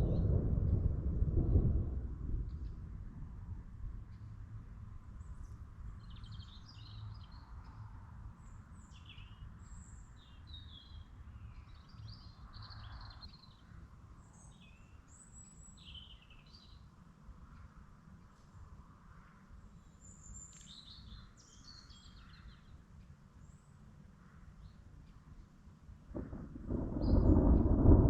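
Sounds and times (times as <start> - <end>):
steady low rumble: 0.0 - 6.4, 26.1 - 28.0
songbirds chirping: 5.1 - 27.8.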